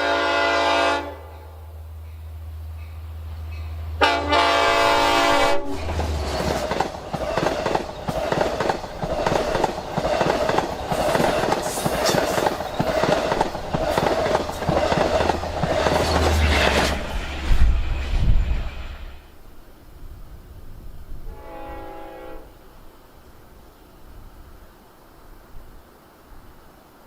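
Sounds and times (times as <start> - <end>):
locomotive air horn blast: 0.0 - 1.8, 4.0 - 6.0, 21.2 - 22.6
train wheels clattering over rail joints: 5.8 - 18.3.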